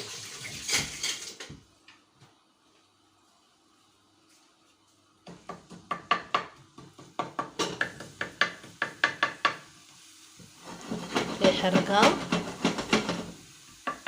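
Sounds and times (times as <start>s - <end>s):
utensil knocking and scraping pan: 10.5s - 14.0s.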